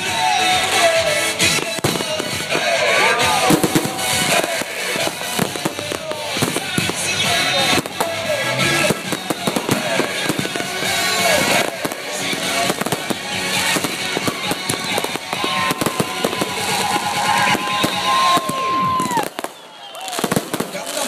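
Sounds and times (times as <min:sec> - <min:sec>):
fireworks bangs and crackling: 0:00.0 - 0:21.0
whistling fireworks: 0:00.0 - 0:21.0
long steady whistle: 0:15.4 - 0:20.4.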